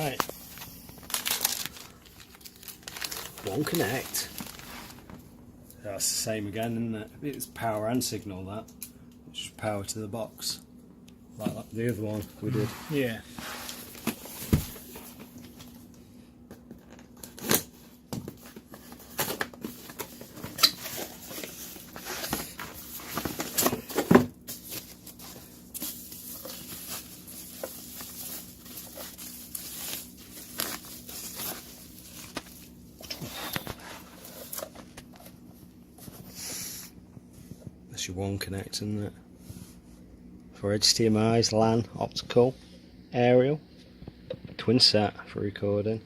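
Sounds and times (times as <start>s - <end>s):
plastic packaging crinkling and tearing: 0.0s - 5.2s, 16.7s - 35.3s
faint steady hum: 0.0s - 46.0s.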